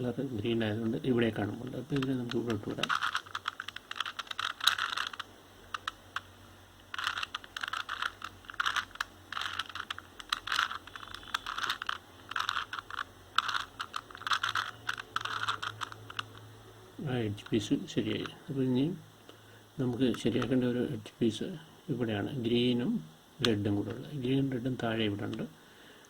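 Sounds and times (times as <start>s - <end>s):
puzzle cube turns clicking: 0.4s - 16.5s, 17.1s - 18.6s, 19.2s - 20.7s, 23.4s - 25.5s.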